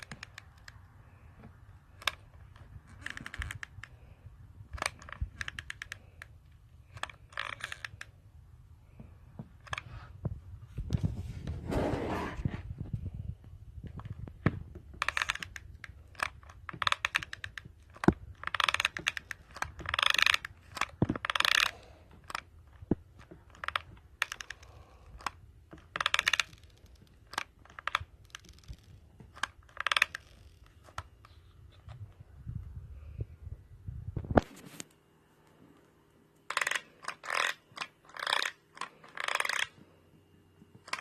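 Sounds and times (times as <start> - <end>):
hard plastic parts clicking: 0.0 - 8.2, 13.8 - 32.1, 36.4 - 39.8, 40.7 - 41.0.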